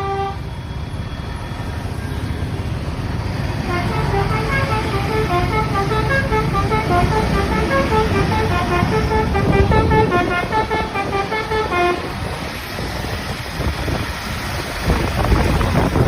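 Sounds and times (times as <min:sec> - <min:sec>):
musical air horn playing tune: 0:00.0 - 0:00.5, 0:03.6 - 0:12.4
bus low rumble: 0:00.0 - 0:16.0
wind noise: 0:01.8 - 0:16.0.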